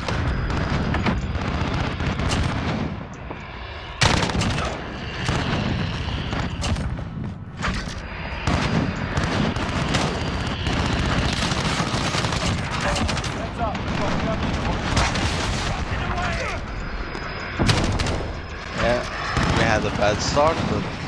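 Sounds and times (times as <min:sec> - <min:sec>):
video game gunshots: 0:04.0 - 0:16.6, 0:17.6 - 0:21.0
battle noise: 0:17.6 - 0:21.0.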